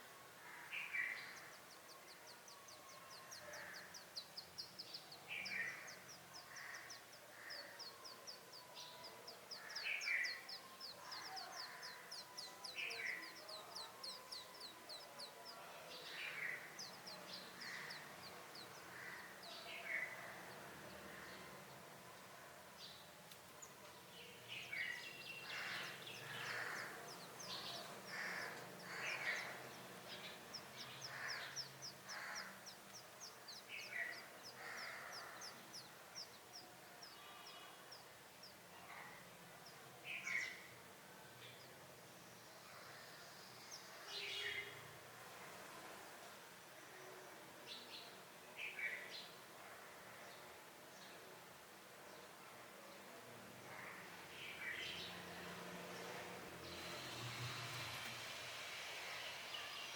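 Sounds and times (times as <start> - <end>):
birds calling at nest: 25.5 - 36.3.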